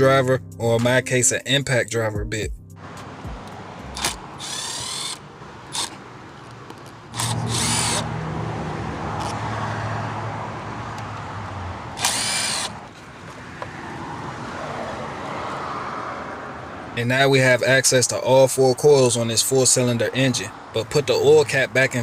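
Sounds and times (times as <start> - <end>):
power driver whining: 2.8 - 9.6, 10.8 - 13.7
sharp clicks of handling tools: 3.4 - 8.0.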